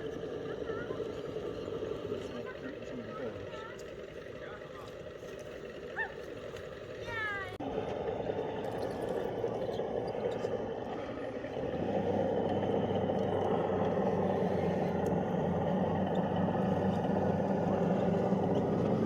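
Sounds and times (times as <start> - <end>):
electric motor and gearbox whir: 11.6 - 19.0.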